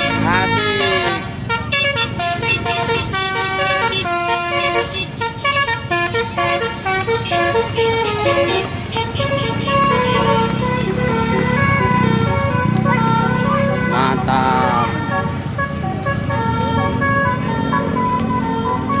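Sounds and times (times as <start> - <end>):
bus air horn playing a tune: 0.0 - 19.0.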